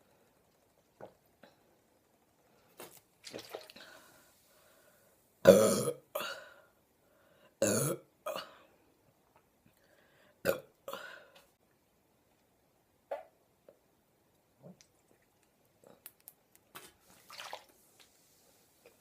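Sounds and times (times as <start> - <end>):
woman burping loudly: 5.4 - 6.3, 7.6 - 8.6, 10.4 - 11.1.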